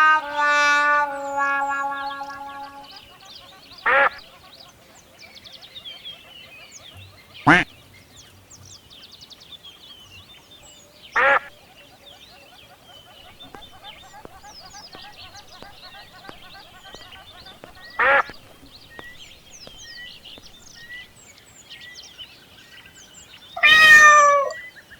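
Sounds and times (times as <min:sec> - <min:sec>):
duck quacking: 0:00.0 - 0:03.0, 0:03.8 - 0:04.2, 0:07.5 - 0:07.7, 0:11.2 - 0:11.5, 0:13.3 - 0:21.1
small birds chirping: 0:00.0 - 0:24.9.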